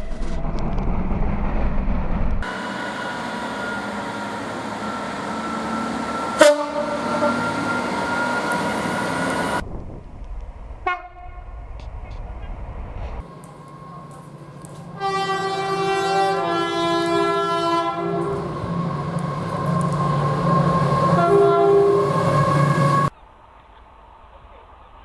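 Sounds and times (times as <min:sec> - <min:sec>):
train running by: 0:00.0 - 0:25.0
train air horn: 0:02.4 - 0:09.4, 0:10.8 - 0:11.5, 0:13.2 - 0:23.1.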